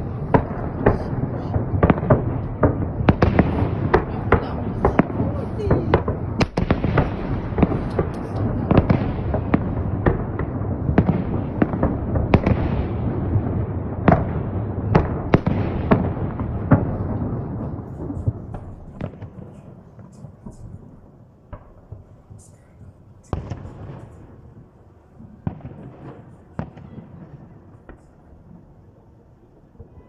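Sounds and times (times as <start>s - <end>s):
scattered firework pops: 0.0s - 28.8s
fireworks bangs: 0.0s - 30.0s.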